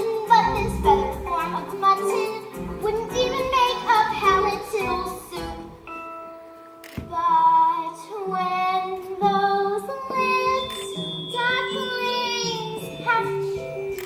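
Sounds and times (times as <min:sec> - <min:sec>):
young voices singing: 0:00.0 - 0:05.8, 0:07.1 - 0:13.6
instrumental accompaniment: 0:00.0 - 0:07.3.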